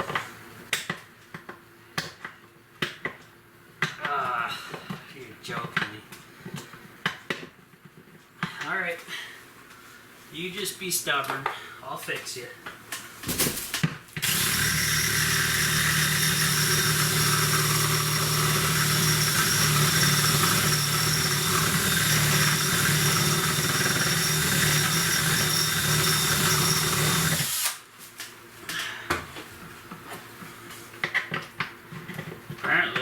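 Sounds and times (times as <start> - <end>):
electric drill boring plastic: 14.2 - 27.8.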